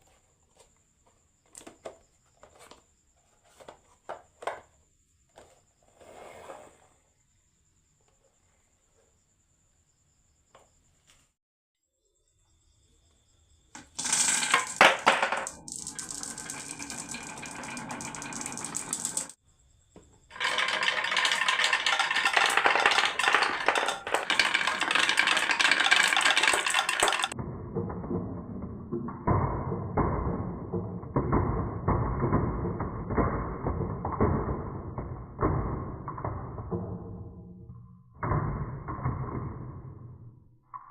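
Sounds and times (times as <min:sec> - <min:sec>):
marbles rattling down wooden run: 0:13.8 - 0:19.4, 0:20.3 - 0:37.4.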